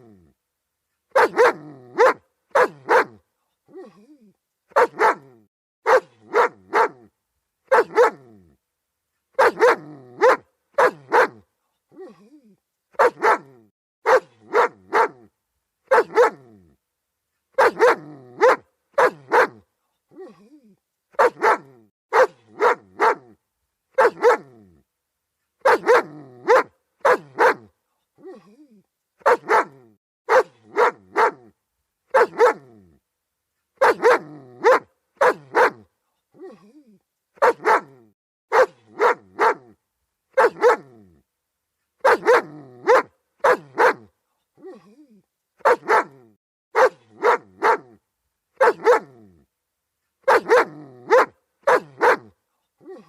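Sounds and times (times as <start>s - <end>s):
dog barking: 1.1s - 3.2s, 4.7s - 7.1s, 7.7s - 8.3s, 9.4s - 11.4s, 13.0s - 15.3s, 15.9s - 16.5s, 17.6s - 19.6s, 21.2s - 23.4s, 24.0s - 24.6s, 25.6s - 27.7s, 29.2s - 31.5s, 32.1s - 32.8s, 33.8s - 36.5s, 37.4s - 41.0s, 42.0s - 44.8s, 45.6s - 48.0s, 48.6s - 49.2s, 50.2s - 53.0s.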